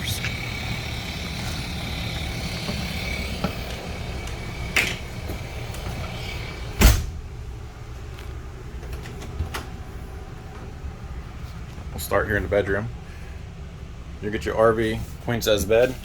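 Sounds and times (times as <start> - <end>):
low engine-like rumble: 0.0 - 16.0
door slamming shut: 6.6 - 7.4.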